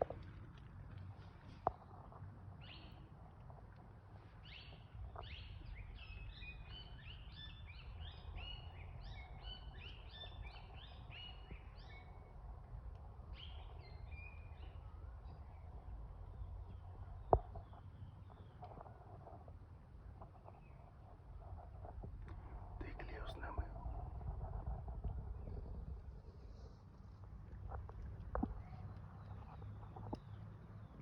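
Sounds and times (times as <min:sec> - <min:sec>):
faint low outdoor rumble: 0:00.0 - 0:31.0
birds chirping: 0:04.3 - 0:12.4, 0:13.2 - 0:19.3, 0:21.8 - 0:24.2.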